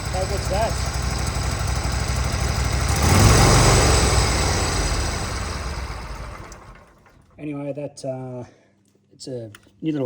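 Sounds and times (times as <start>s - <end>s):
ride-on mower engine running: 0.0s - 7.3s.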